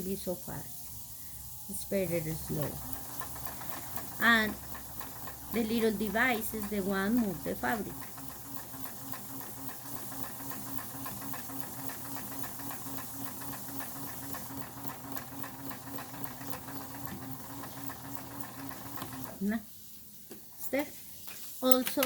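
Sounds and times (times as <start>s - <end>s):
sewing machine stitching: 2.1s - 19.5s.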